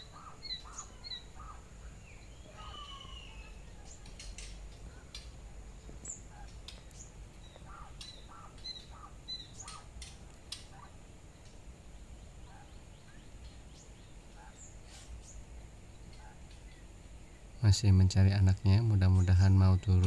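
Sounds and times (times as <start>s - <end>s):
quail chirping and peeping: 0.0s - 5.4s, 6.0s - 11.6s, 12.2s - 16.9s.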